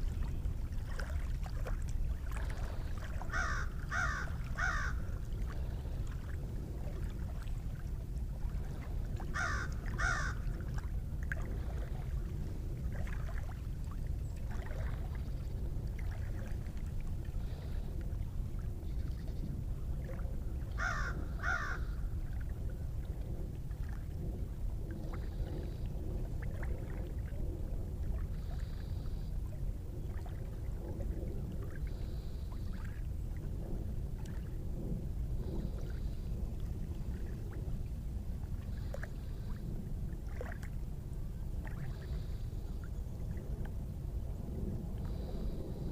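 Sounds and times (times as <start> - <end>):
steady low rumble: 0.0 - 45.9
bird harsh calls: 3.3 - 5.0.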